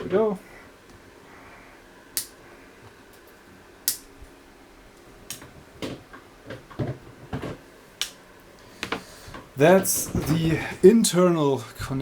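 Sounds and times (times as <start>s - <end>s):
electric fan humming: 0.0s - 12.0s.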